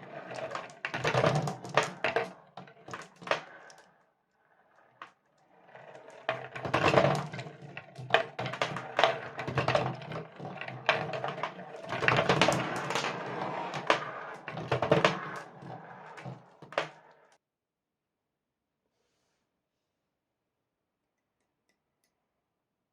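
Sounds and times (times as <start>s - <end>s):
marbles rolling on cardboard track: 0.0s - 17.3s.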